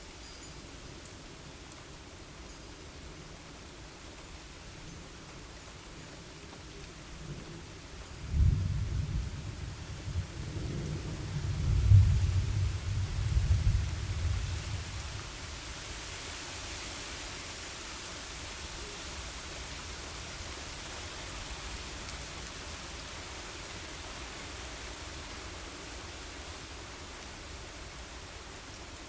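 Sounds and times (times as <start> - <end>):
steady rain: 0.0 - 29.0
wind: 0.0 - 29.0
thunderclap rumble: 8.2 - 15.2.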